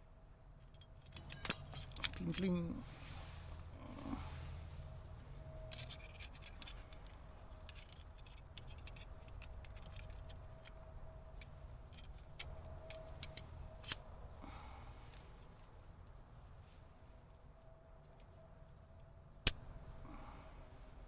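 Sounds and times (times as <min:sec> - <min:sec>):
metal parts clinking: 0:00.6 - 0:02.8, 0:05.6 - 0:14.1.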